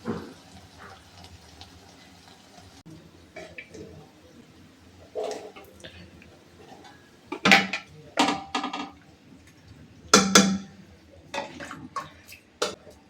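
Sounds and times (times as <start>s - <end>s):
dishes and pots clattering: 3.3s - 4.1s, 5.0s - 6.0s, 6.6s - 9.0s, 10.1s - 13.0s.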